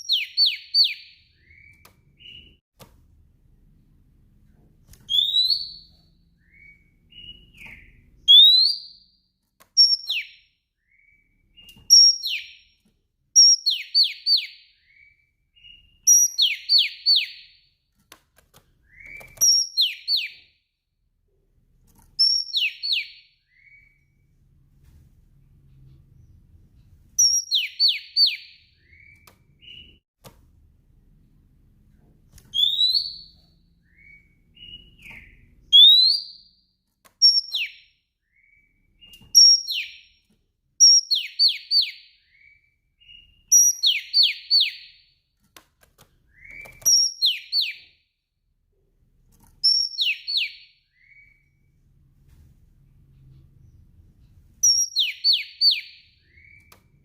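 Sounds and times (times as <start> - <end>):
bird calling in whistled phrases: 5.1 - 9.0, 22.2 - 24.0, 32.5 - 36.5, 37.2 - 40.2, 40.8 - 45.1, 46.3 - 48.0, 49.6 - 51.4, 54.6 - 56.7
lower bird chirps: 27.2 - 30.0, 32.5 - 45.3, 46.3 - 48.1, 49.6 - 51.6, 54.6 - 57.0.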